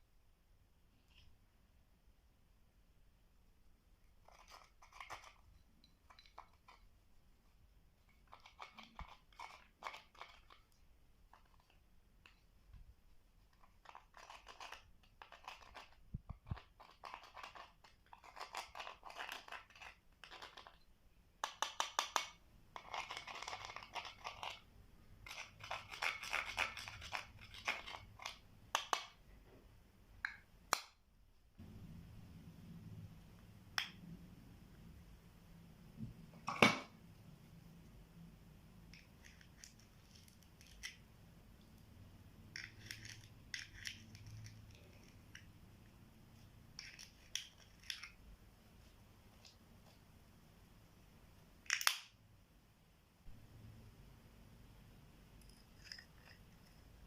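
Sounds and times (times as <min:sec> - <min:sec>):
low steady hum: 0:28.2 - 0:57.0.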